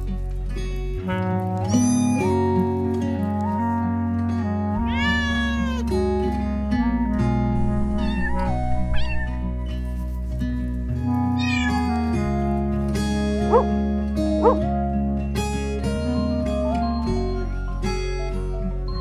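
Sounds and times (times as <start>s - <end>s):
background music: 0.0s - 19.0s
cat meowing: 4.8s - 5.9s, 7.8s - 9.6s, 11.4s - 12.2s.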